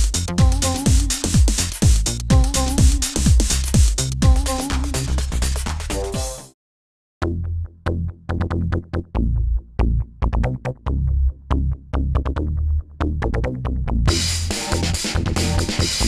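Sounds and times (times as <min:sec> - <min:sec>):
electronic music with drum-machine beat: 0:00.0 - 0:06.5, 0:14.1 - 0:16.0.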